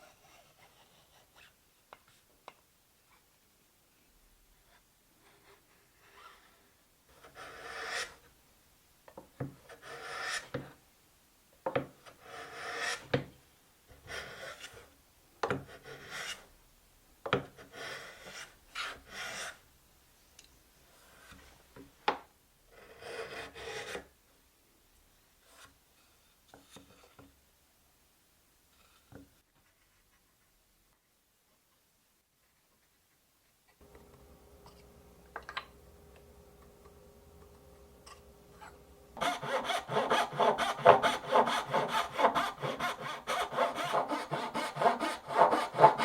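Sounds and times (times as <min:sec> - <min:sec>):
hand tool rasping wood: 0:39.2 - 0:46.0.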